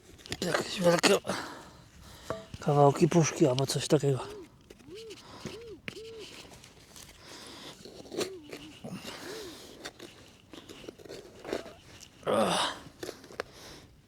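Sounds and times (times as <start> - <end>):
digging in soil: 0.0 - 14.0
metal detector warbling tones: 4.2 - 6.4.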